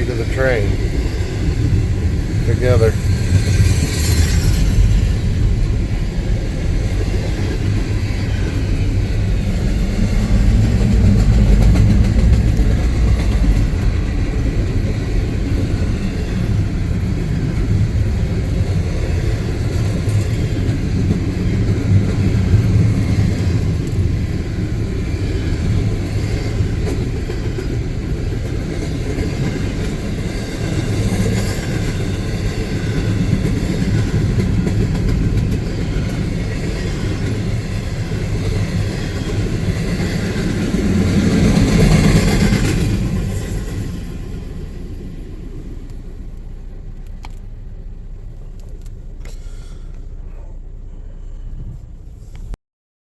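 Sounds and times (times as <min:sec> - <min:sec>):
train rumbling past: 0:00.0 - 0:52.6.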